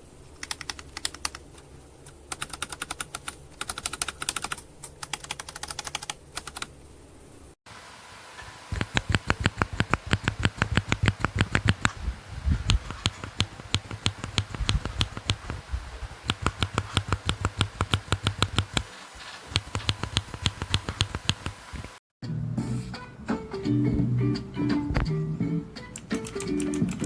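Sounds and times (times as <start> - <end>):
fast typing on mechanical keyboard: 0.4 - 6.7, 8.8 - 12.0, 12.7 - 15.5, 16.2 - 18.9, 19.5 - 21.6, 26.0 - 27.0.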